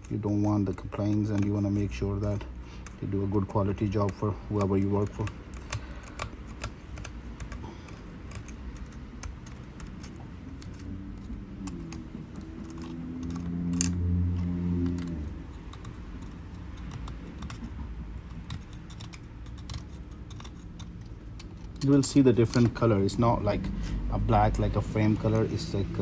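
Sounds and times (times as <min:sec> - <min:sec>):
metal tool scraping adhesive: 0:00.0 - 0:23.2
low steady hum: 0:00.0 - 0:26.0.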